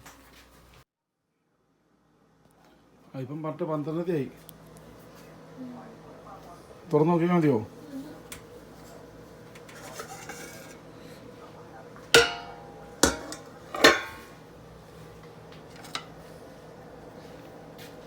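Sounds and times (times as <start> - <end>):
metal pot lid clanking: 9.6 - 10.8, 12.1 - 14.4.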